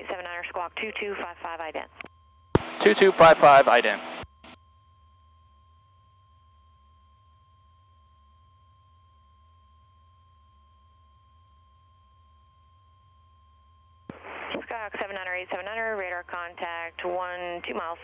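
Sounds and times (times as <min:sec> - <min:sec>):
faint steady high tone: 0:01.6 - 0:14.1.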